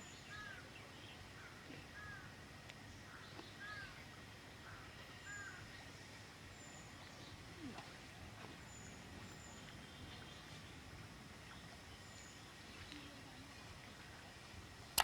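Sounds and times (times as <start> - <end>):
bird calling faintly: 3.0 - 5.9.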